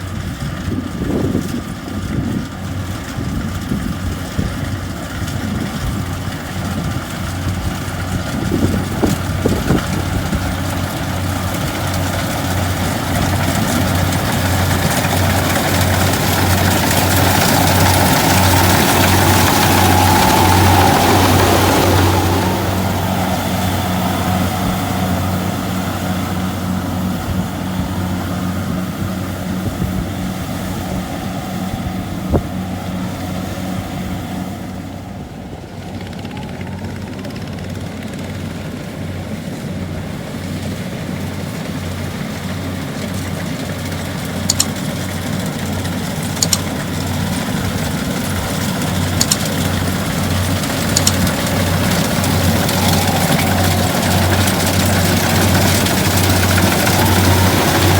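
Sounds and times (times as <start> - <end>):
diesel engine humming: 0.0 - 57.9
sharp clicks: 44.5 - 44.8, 46.4 - 46.8, 49.2 - 49.6, 50.9 - 51.5.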